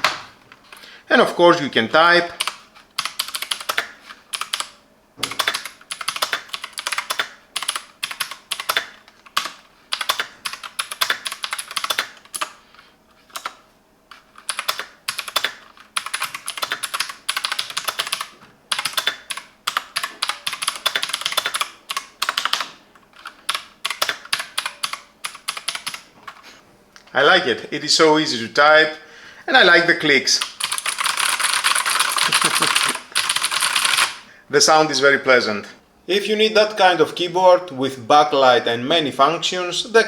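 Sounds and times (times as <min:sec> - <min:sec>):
keyboard key clicks: 0:14.5 - 0:26.0.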